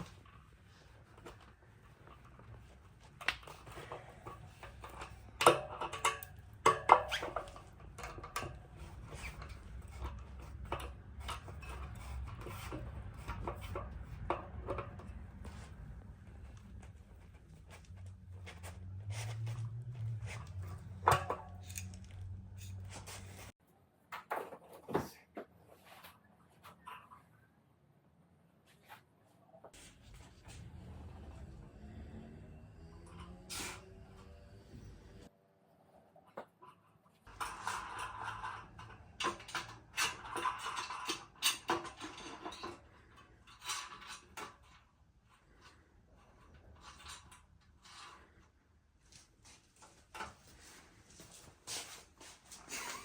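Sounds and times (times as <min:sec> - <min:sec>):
tools clicking and knocking: 0:03.2 - 0:15.5, 0:20.4 - 0:23.0
metallic clinks and rattles: 0:20.0 - 0:23.5.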